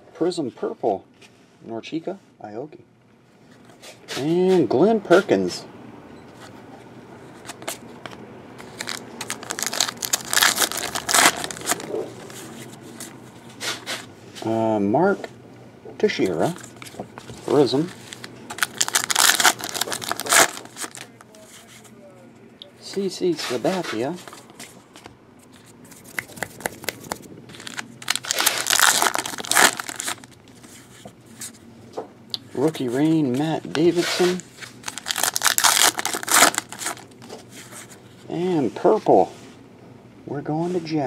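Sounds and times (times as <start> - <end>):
foil wrapper tearing and crinkling: 8.6 - 12.4, 17.7 - 21.2, 25.9 - 30.4, 34.3 - 37.2.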